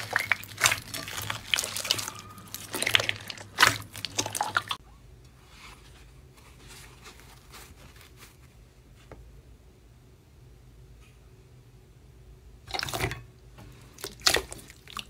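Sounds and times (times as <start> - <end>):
crunchy slime crackling: 0.0 - 4.8, 14.0 - 15.0.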